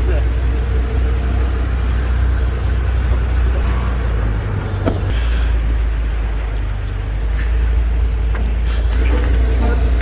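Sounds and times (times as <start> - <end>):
car engine and road noise: 0.0 - 10.0.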